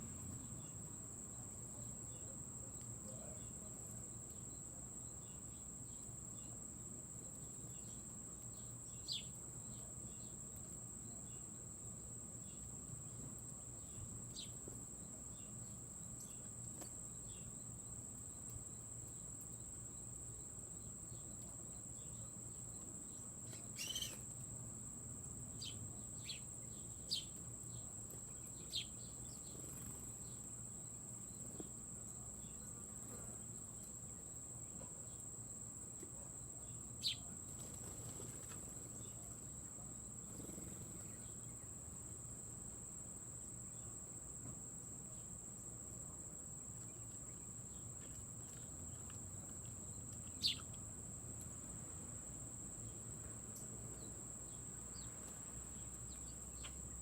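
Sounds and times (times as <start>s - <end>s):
insect chorus: 0.0s - 57.0s
bird chirps: 23.5s - 24.3s, 37.0s - 37.3s, 50.3s - 50.7s.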